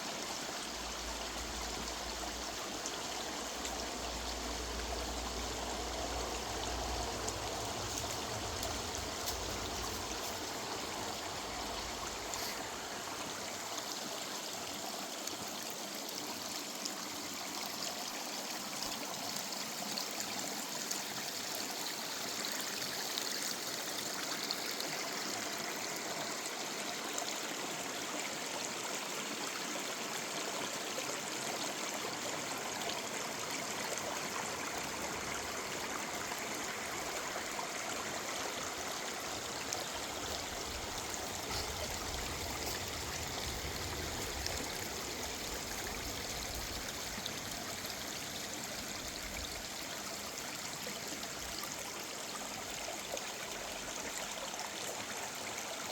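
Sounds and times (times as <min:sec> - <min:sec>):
water trickling: 0:00.4 - 0:25.7, 0:33.6 - 0:54.4
river water washing over stones: 0:00.9 - 0:16.0, 0:34.4 - 0:50.4.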